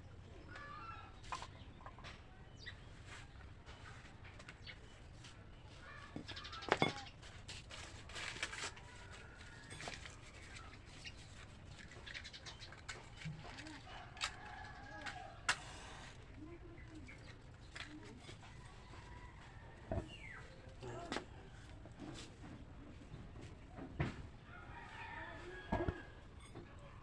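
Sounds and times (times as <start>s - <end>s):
birds calling: 5.7s - 7.2s.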